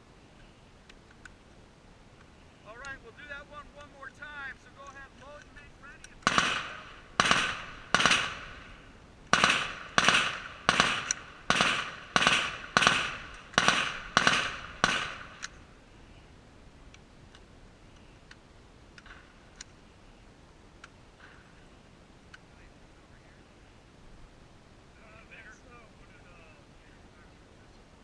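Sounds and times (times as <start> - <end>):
faint clicks: 0.4 - 1.4, 16.8 - 19.8
rifle shots echoing: 6.2 - 15.5.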